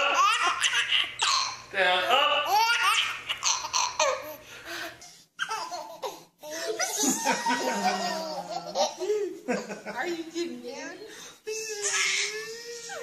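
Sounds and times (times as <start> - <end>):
baby laughing: 0.0 - 1.6, 2.4 - 4.4, 5.4 - 9.2, 11.6 - 13.0.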